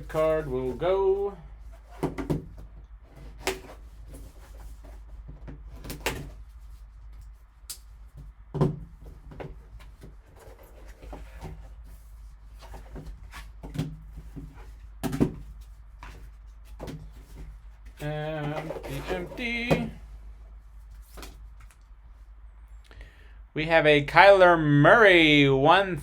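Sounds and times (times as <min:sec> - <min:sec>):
packaging knocks and scuffs: 0:08.1 - 0:20.0.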